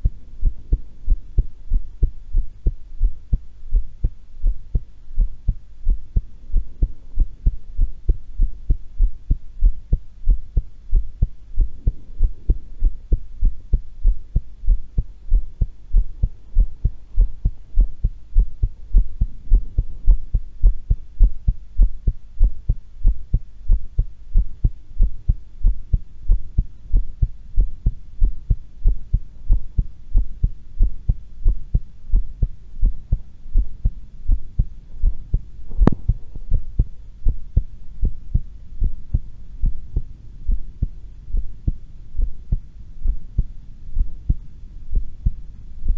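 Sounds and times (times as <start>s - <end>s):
heartbeat: 0.0s - 45.9s.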